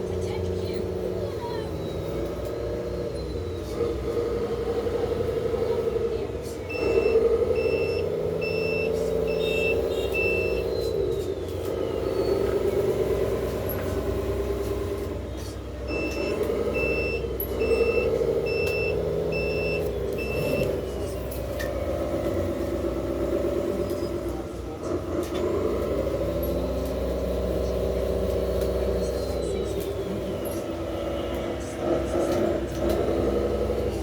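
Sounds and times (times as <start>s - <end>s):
toy truck motor whining: 0.0s - 34.0s
reversing beeper: 1.2s - 3.9s, 6.7s - 24.4s, 26.4s - 31.3s.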